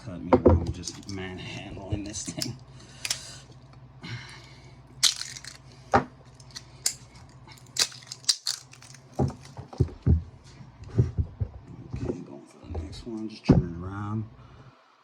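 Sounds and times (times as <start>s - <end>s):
metal tools clicking and scraping: 0.8s - 1.2s, 2.0s - 3.4s, 5.0s - 5.6s, 6.3s - 9.6s.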